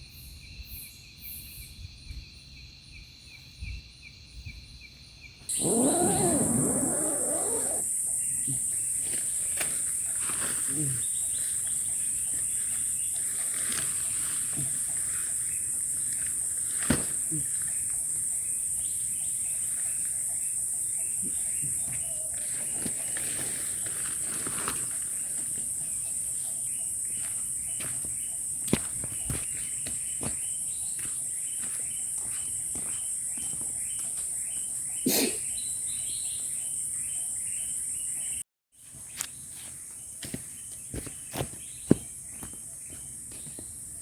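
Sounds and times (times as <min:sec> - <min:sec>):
insect chorus: 0:00.0 - 0:44.0
short chirping call: 0:05.5 - 0:08.6.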